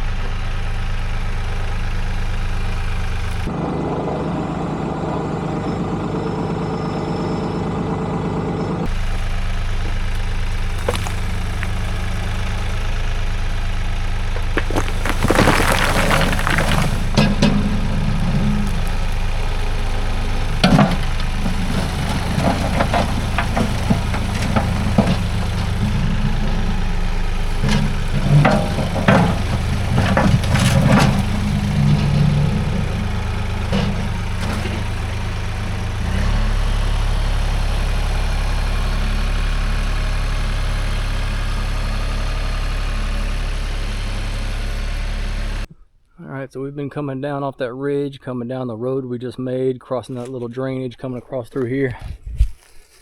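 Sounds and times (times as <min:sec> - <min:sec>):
vehicle engine running: 0:00.0 - 0:45.7
clunks and rattles: 0:10.5 - 0:13.0, 0:13.8 - 0:36.3.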